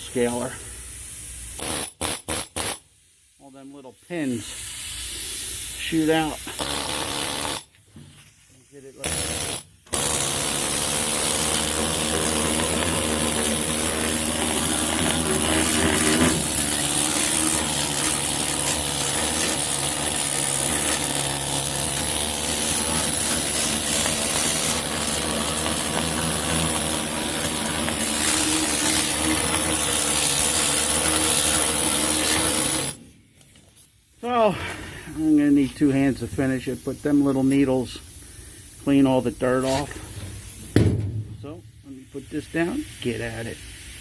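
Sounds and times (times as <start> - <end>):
needle scaler hammering metal: 9.0 - 33.0.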